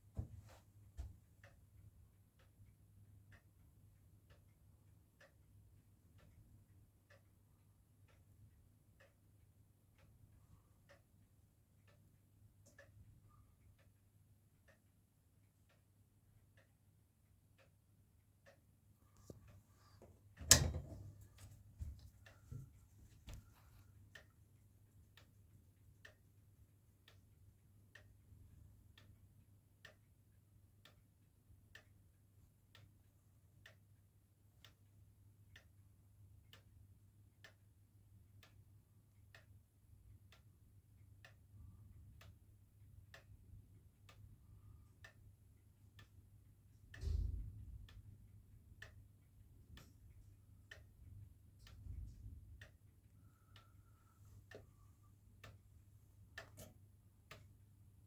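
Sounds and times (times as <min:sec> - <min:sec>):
grandfather clock ticking: 0:17.4 - 0:25.4, 0:50.6 - 0:57.9.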